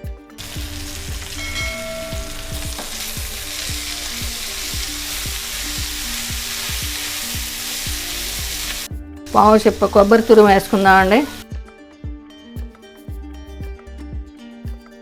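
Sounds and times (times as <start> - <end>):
flowers sizzling in hot oil: 0.4 - 11.4.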